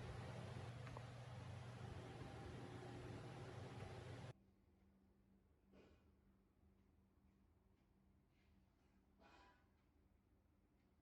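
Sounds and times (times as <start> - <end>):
faint low hum: 0.0 - 4.8.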